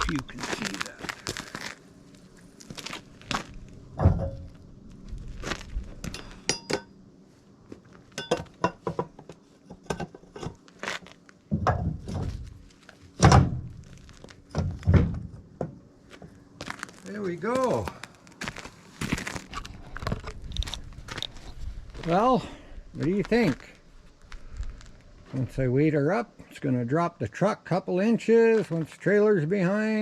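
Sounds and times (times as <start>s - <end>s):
thunks and knocks: 11.5s - 12.3s, 14.6s - 15.8s.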